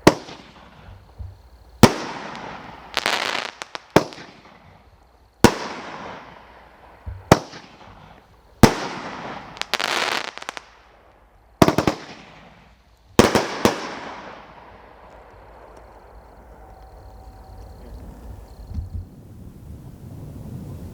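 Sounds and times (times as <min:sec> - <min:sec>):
firework bursts with hiss: 0:00.0 - 0:11.0, 0:11.6 - 0:15.1
small firework pops: 0:00.0 - 0:16.1.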